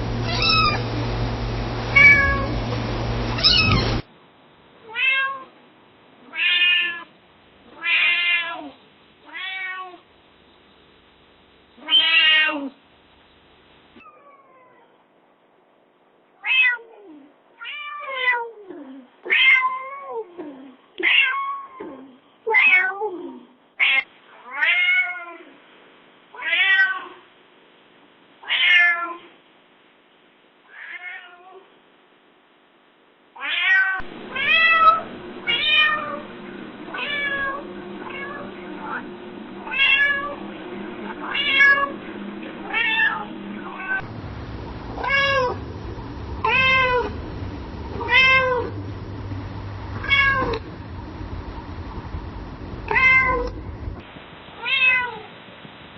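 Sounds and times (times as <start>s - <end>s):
background hiss: 0.0s - 55.9s
cats meowing: 0.2s - 0.8s, 2.0s - 2.5s, 3.4s - 4.0s, 4.9s - 5.5s, 7.7s - 10.0s, 11.8s - 12.7s, 14.0s - 14.9s, 16.4s - 23.1s, 33.4s - 36.2s, 36.9s - 39.0s, 39.6s - 40.4s, 41.1s - 42.0s, 42.6s - 44.1s, 45.0s - 45.6s, 46.4s - 47.2s, 48.0s - 48.8s, 50.0s - 50.6s, 52.9s - 53.6s.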